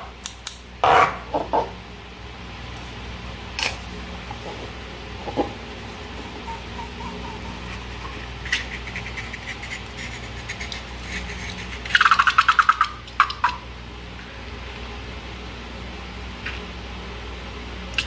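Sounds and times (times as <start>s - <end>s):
low hum: 3.0s - 11.9s
rubber balloon squeaks: 5.3s - 8.9s.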